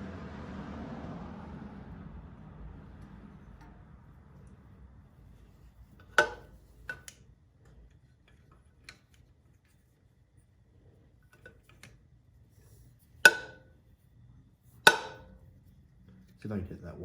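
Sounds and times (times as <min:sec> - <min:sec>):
metal tools knocking on metal: 0:06.0 - 0:07.0, 0:14.9 - 0:15.4.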